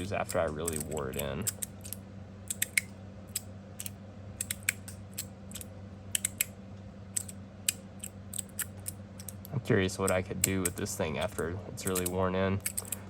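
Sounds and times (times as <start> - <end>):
magnetic metal plates clicking: 7.2 - 13.0.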